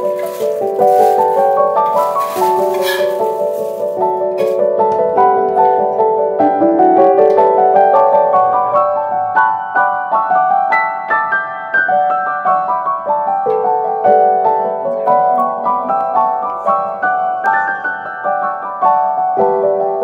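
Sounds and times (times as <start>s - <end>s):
piano music: 0.0s - 20.0s.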